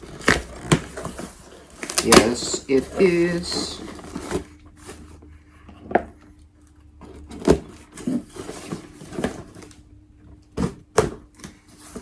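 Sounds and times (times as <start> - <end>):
packaging rustling: 0.0 - 5.2.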